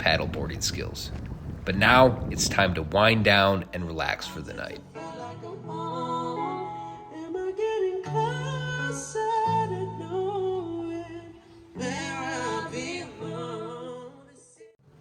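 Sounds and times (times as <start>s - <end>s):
guitar: 2.1s - 13.8s
person singing: 4.3s - 14.7s.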